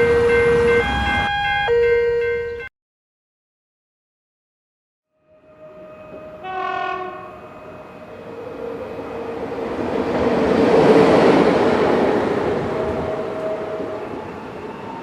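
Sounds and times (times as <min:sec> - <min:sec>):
train passing: 0:00.0 - 0:02.6, 0:05.2 - 0:15.0
train horn blast: 0:05.1 - 0:09.5.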